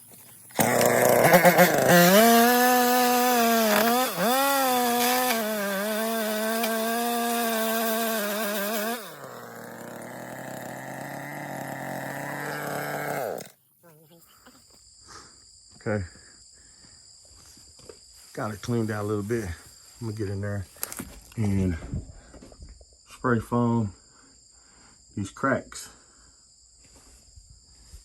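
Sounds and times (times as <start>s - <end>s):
chainsaw running: 0.5s - 13.6s.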